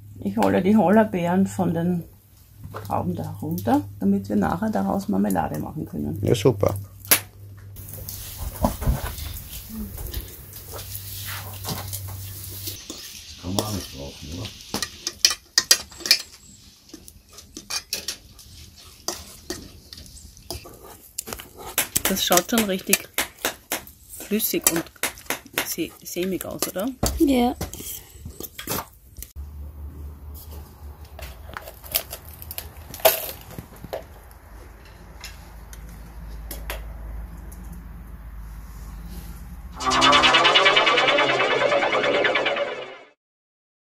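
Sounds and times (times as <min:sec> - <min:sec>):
utensil scraping against a pot: 0:10.8 - 0:13.9, 0:14.8 - 0:21.8.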